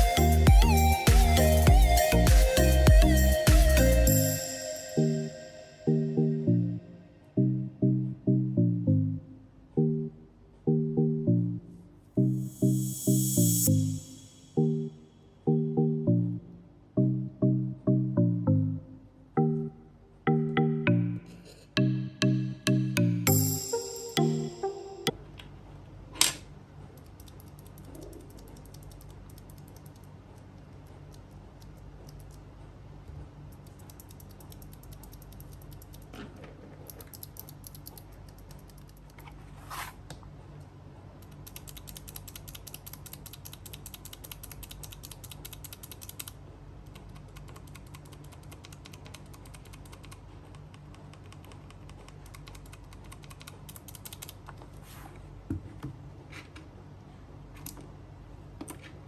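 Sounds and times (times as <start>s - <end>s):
steady low hum: 0.0s - 41.9s
typing on mechanical keyboard: 27.0s - 32.4s, 33.5s - 36.2s, 36.8s - 39.2s, 41.2s - 54.6s.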